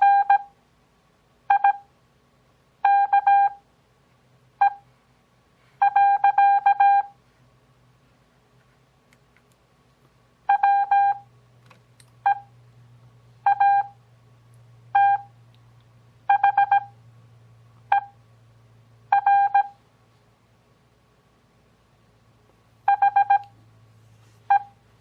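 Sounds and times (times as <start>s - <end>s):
morse code tones: 0.0s - 0.5s, 1.5s - 1.9s, 2.8s - 3.6s, 4.6s - 4.9s, 5.8s - 7.2s, 10.5s - 11.3s, 12.2s - 12.6s, 13.4s - 14.0s, 14.9s - 15.3s, 16.3s - 17.0s, 17.9s - 18.2s, 19.1s - 19.8s, 22.8s - 23.6s, 24.4s - 24.8s.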